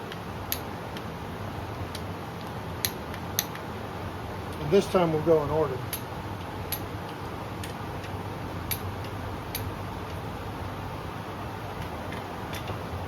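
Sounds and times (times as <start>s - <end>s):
steady low hum: 0.0s - 13.0s
torque wrench clicking: 5.9s - 10.2s.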